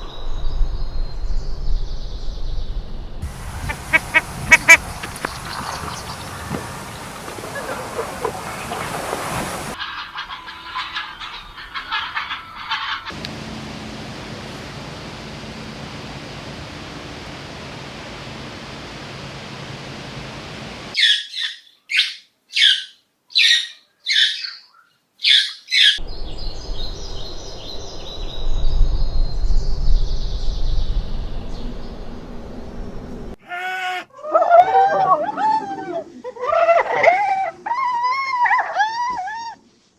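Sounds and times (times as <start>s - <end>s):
bird chirping: 0.1s - 9.0s, 14.8s - 32.0s
low rumble: 26.0s - 33.4s.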